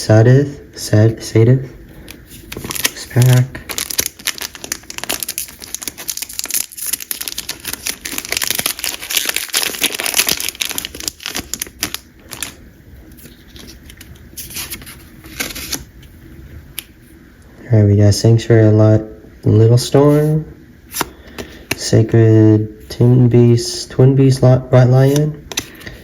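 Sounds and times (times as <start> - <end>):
cards rustling: 1.9 - 15.9, 24.9 - 26.0
foil pack tearing and crinkling: 2.5 - 12.6, 14.4 - 15.9.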